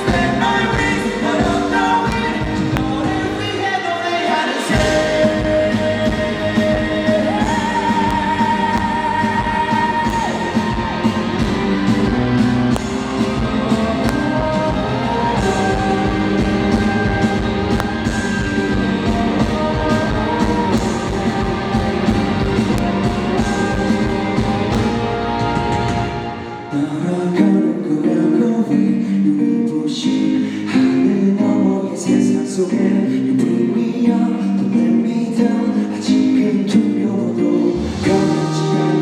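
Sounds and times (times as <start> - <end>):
live pop-rock band playing: 0.0 - 39.0.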